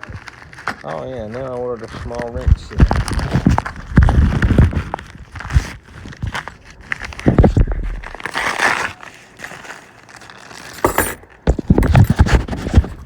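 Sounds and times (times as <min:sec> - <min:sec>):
packaging rustling: 0:00.0 - 0:13.0
metal wrenches clinking: 0:10.8 - 0:12.1.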